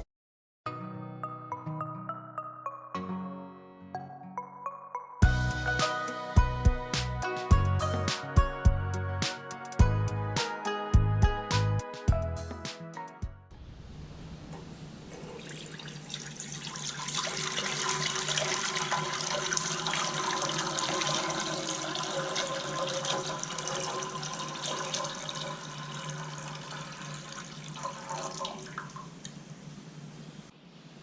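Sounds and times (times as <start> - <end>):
liquid pouring into container: 15.1 - 29.4.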